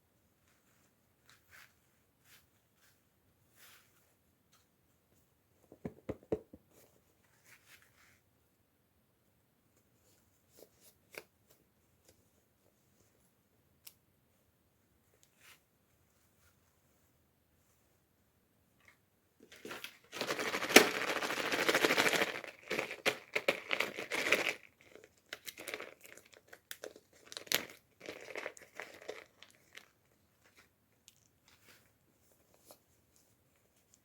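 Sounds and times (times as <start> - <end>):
packaging crinkling and tearing: 19.6 - 29.9.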